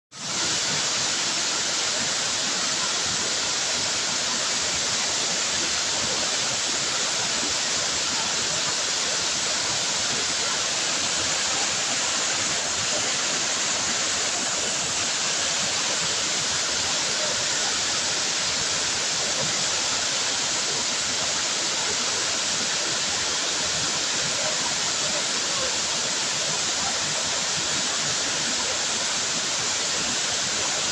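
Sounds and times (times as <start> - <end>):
waterfall hiss: 0.1 - 30.9.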